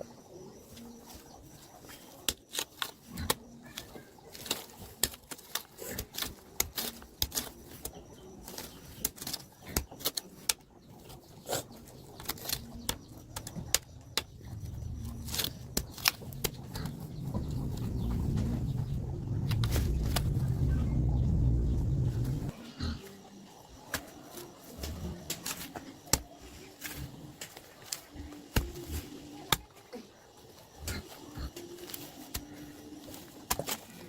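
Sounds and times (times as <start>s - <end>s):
low rumble: 14.0s - 22.6s.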